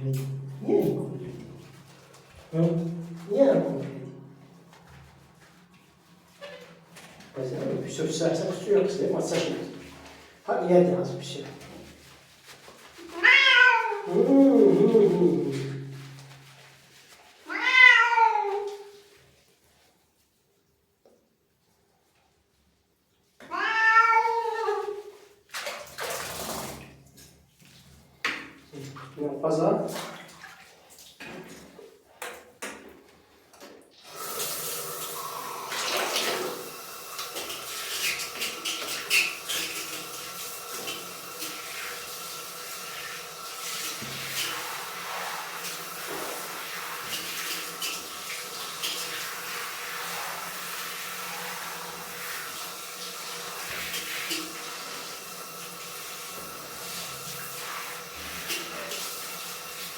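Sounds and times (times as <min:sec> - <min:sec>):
water running from a tap: 0:00.2 - 0:19.2, 0:23.6 - 0:31.9, 0:33.9 - 0:59.9
knocks and splashes: 0:25.5 - 0:27.4, 0:29.8 - 0:33.8, 0:35.7 - 0:36.6, 0:43.6 - 0:44.7.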